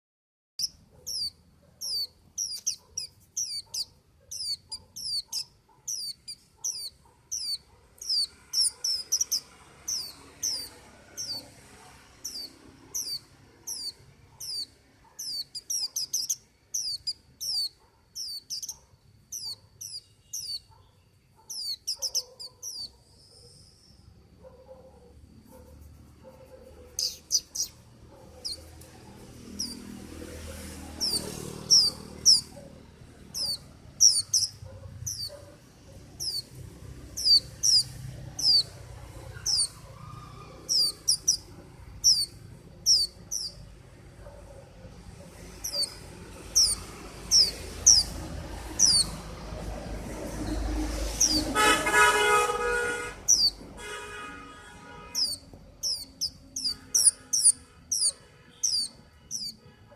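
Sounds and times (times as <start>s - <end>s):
bird chirping: 0.6s - 51.9s, 53.2s - 53.8s, 55.0s - 59.7s
low traffic rumble: 0.6s - 59.9s
vehicle horn: 51.3s - 55.4s, 56.6s - 59.9s.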